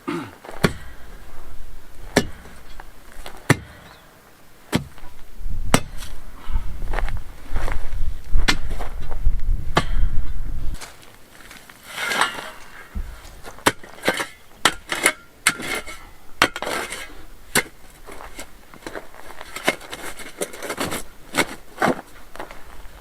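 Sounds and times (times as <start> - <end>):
earth and stones crumbling: 0.3 - 4.0, 4.6 - 23.0
metal tool striking stony ground: 0.5 - 1.2, 2.0 - 4.0, 4.7 - 6.2, 8.4 - 9.1, 9.7 - 10.2, 13.6 - 17.8.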